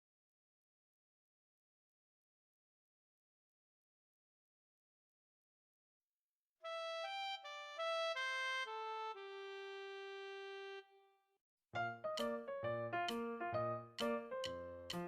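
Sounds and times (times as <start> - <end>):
descending melodic line: 6.7 - 10.8.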